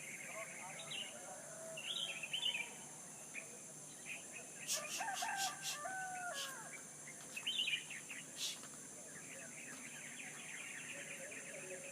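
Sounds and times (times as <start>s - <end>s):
small birds chirping: 1.8s - 11.9s
steady high hiss: 2.0s - 11.9s
rooster crowing: 4.7s - 6.8s.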